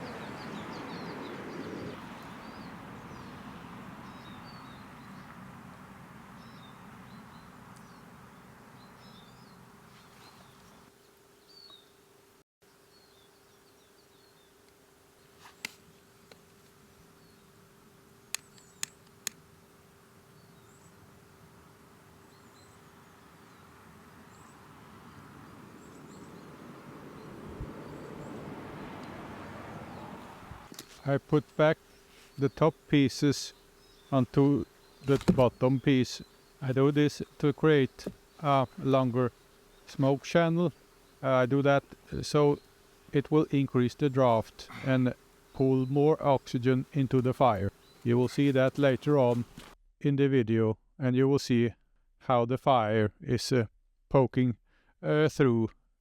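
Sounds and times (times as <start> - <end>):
faint insect buzz: 0.0 - 49.8
sharp clicks: 18.3 - 19.4.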